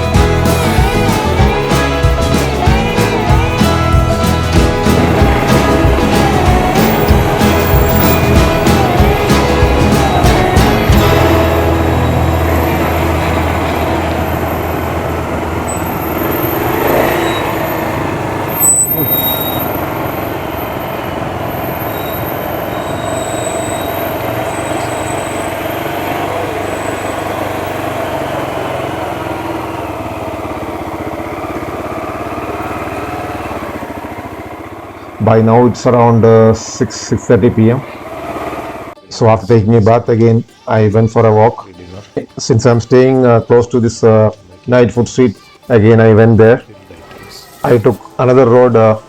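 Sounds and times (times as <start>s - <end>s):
vehicle engine running: 0.0s - 39.1s
road noise: 0.0s - 40.3s, 40.9s - 49.0s.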